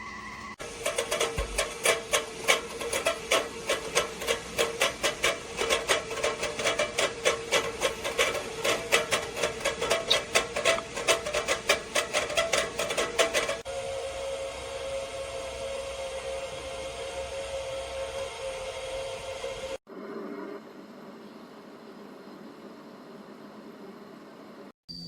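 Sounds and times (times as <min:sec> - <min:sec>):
kettle whistling weakly: 0:00.0 - 0:00.7, 0:09.3 - 0:11.1
kettle ticking rattle: 0:00.6 - 0:13.6.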